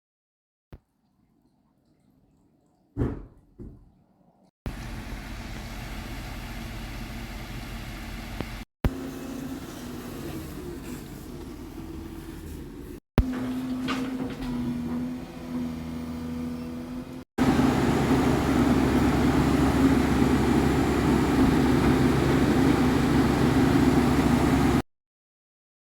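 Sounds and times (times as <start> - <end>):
excavator diesel engine running: 4.7 - 12.3, 13.2 - 24.8.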